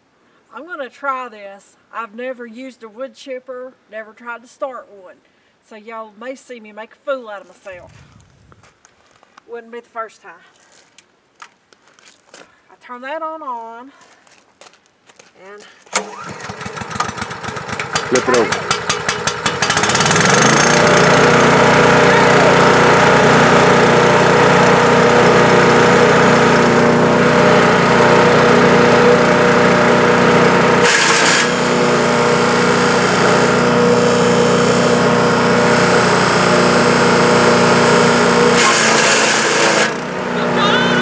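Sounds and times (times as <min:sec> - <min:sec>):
wood chipper engine running: 0:15.9 - 0:41.0.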